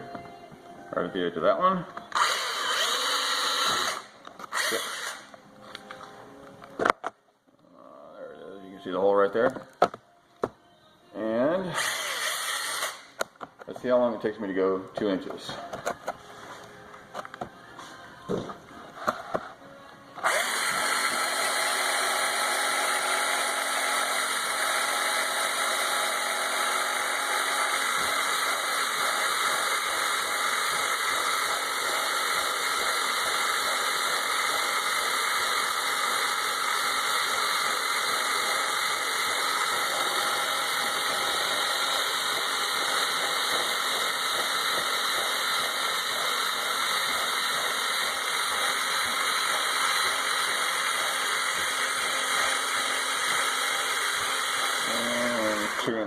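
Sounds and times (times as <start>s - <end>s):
electric drill milling plastic: 2.0s - 5.4s, 11.8s - 13.3s, 20.2s - 56.0s.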